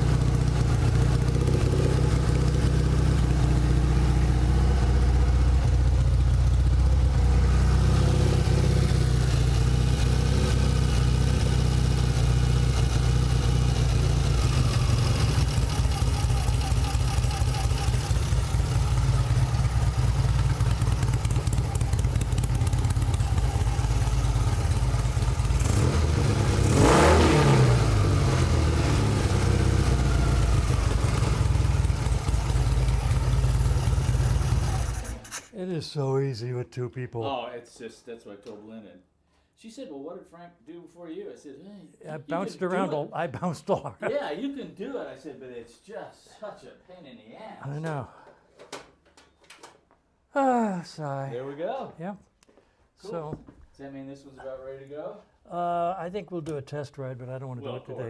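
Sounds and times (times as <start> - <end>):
motorcycle engine idling: 0.0 - 35.4
motorcycle engine revving: 0.0 - 35.5.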